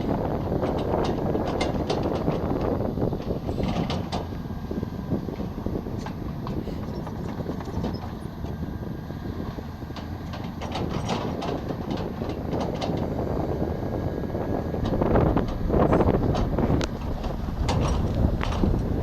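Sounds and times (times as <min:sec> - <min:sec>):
excavator engine running: 0:00.0 - 0:19.0
metallic clanks and rattles: 0:00.5 - 0:04.3, 0:09.9 - 0:13.2, 0:14.8 - 0:19.0.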